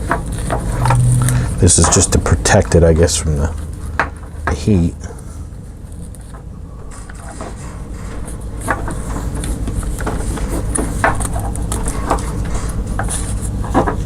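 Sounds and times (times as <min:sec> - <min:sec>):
small parts clicking and knocking: 0:00.0 - 0:02.7
steady low hum: 0:00.0 - 0:14.0.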